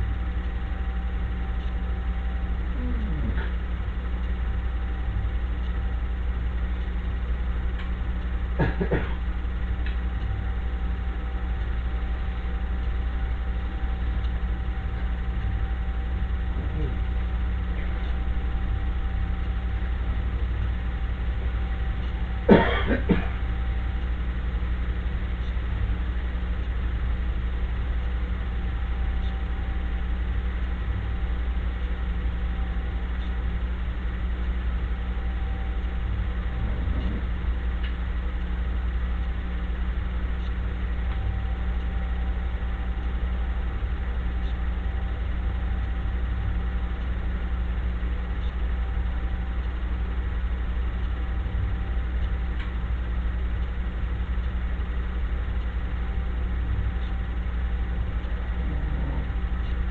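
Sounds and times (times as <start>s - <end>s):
running machine drone: 0.0s - 59.9s.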